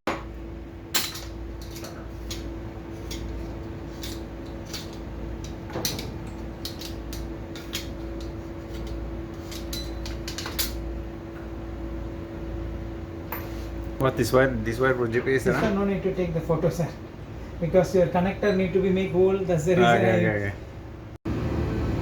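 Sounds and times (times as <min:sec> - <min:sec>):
steady low hum: 0:00.1 - 0:22.0
small tools clicking and clinking: 0:01.0 - 0:10.8.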